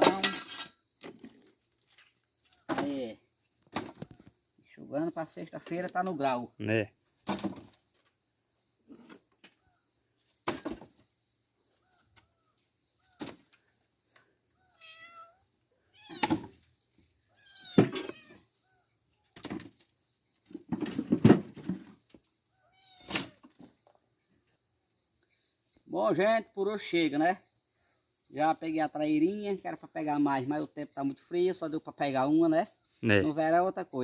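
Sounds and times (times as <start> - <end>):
firewood knocking and thudding: 7.2 - 7.8, 10.3 - 11.2, 20.5 - 22.1
high animal calls: 14.5 - 16.5, 17.3 - 19.0.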